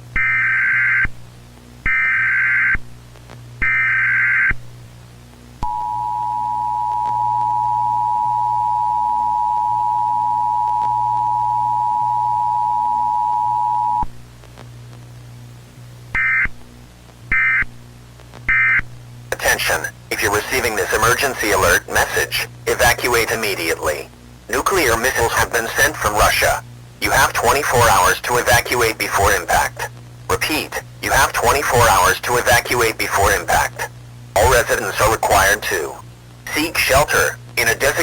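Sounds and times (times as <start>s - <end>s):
steady low hum: 4.6s - 38.0s
data header bursts: 19.3s - 38.0s.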